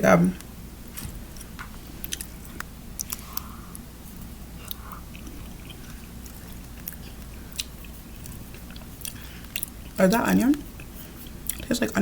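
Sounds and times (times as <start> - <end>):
person chewing food: 1.3 - 11.7
wet mouth clicks: 4.6 - 9.8.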